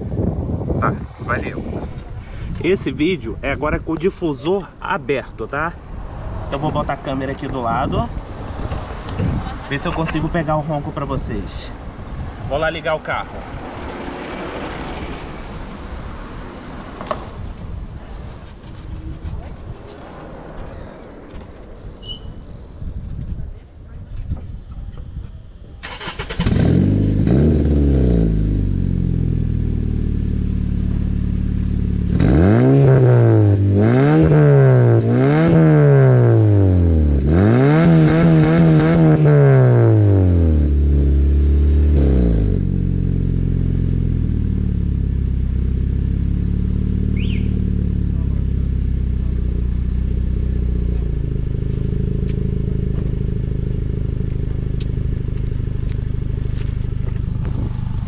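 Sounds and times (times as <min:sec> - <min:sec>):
car engine starting: 0:00.0 - 0:02.6, 0:13.2 - 0:58.0
car engine throttle blips: 0:18.6 - 0:58.0
car engine idling: 0:18.8 - 0:24.6, 0:42.6 - 0:58.0.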